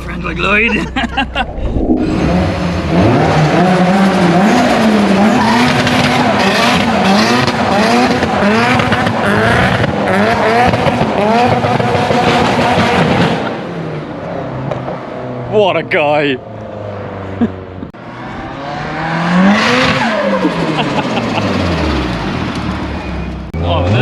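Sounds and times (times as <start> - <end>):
car engine revving hard: 1.9 - 13.6, 18.0 - 22.6.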